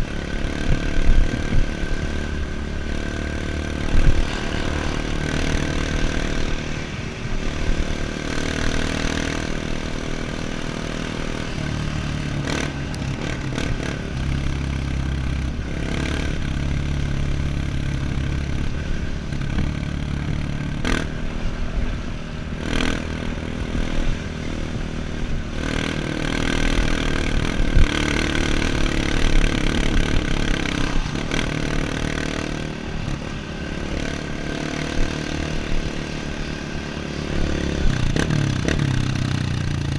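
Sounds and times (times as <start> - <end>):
off-road motorcycle engine: 0.0 - 39.9.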